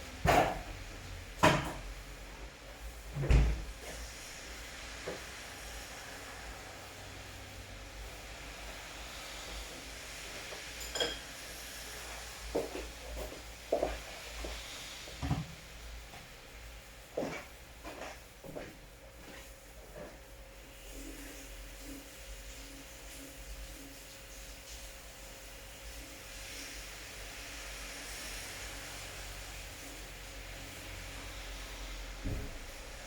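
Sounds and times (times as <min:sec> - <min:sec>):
rain hissing: 0:03.3 - 0:17.7.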